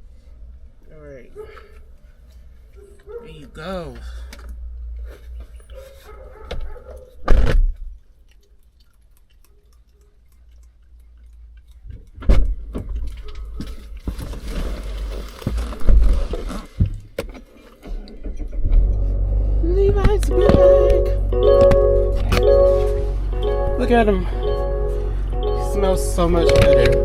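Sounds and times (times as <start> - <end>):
rustling: 13.2 - 16.8.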